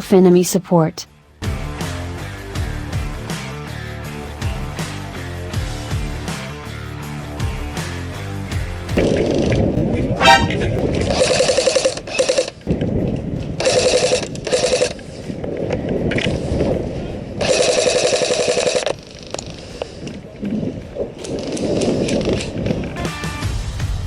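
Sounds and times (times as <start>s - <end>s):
airsoft gun full-auto bursts: 13.6s - 15.0s, 17.4s - 18.9s.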